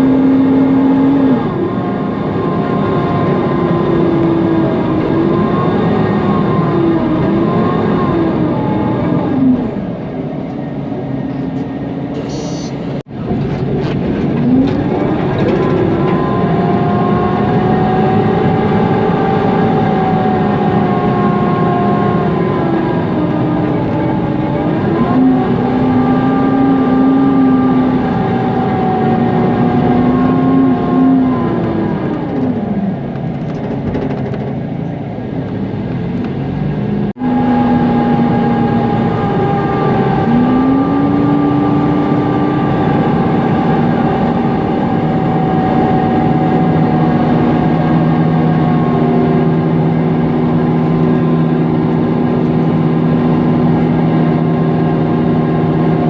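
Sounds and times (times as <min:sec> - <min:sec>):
bus engine running: 0:00.0 - 0:56.0
whining tone: 0:00.0 - 0:56.0
loud cooling fan: 0:37.1 - 0:56.0.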